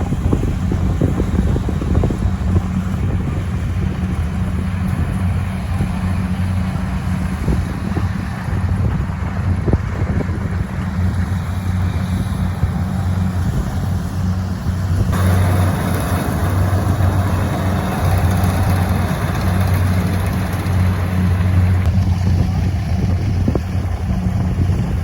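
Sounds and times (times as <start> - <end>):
engine droning: 0.0 - 25.0
loud rushing noise: 11.2 - 25.0.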